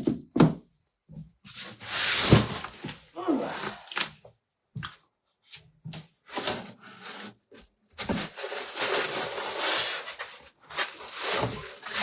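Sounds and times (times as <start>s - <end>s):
cardboard and packing rustling: 1.5s - 4.1s, 6.0s - 12.0s.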